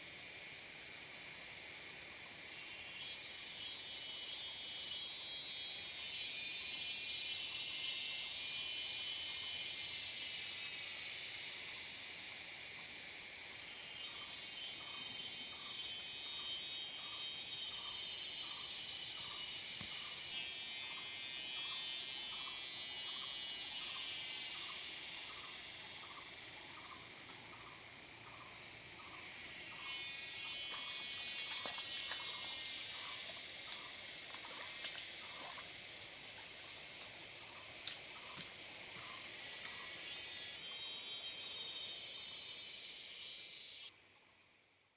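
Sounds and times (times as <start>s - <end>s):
insects droning: 0.0s - 44.9s.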